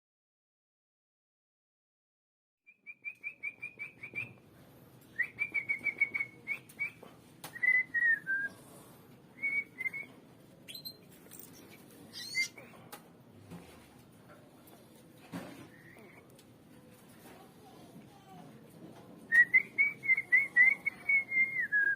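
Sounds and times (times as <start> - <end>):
bird chirping: 10.7 - 12.6.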